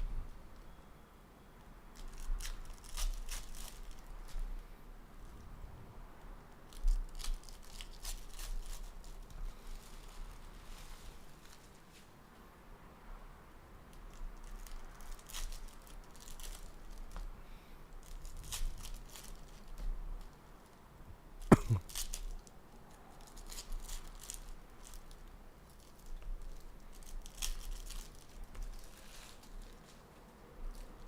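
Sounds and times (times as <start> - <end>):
card wrappers tearing and crinkling: 2.0 - 4.4, 6.7 - 10.2, 14.5 - 17.2, 18.0 - 19.8, 23.2 - 30.1.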